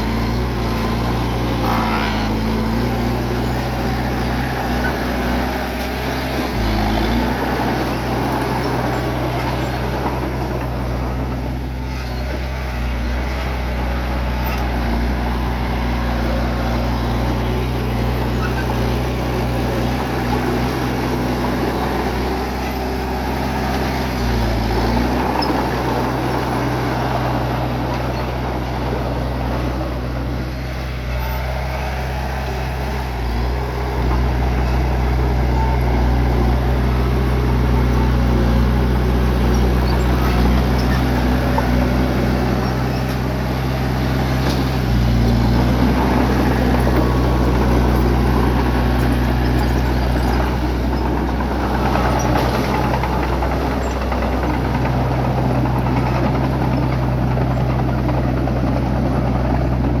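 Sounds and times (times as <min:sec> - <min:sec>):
bulldozer diesel engine running: 0:00.0 - 1:00.0.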